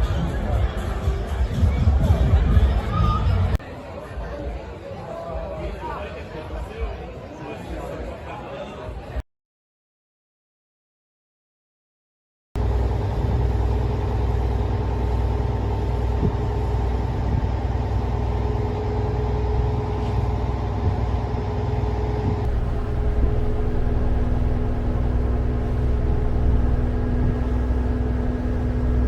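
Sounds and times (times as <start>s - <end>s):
boat engine drone: 12.6s - 21.4s, 22.5s - 29.0s
faint hum: 22.4s - 29.0s.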